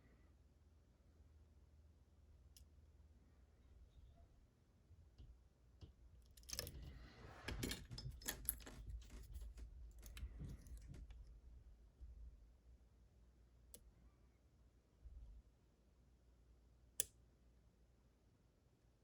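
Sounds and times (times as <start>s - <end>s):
metallic clicks and scraping: 5.8s - 11.3s.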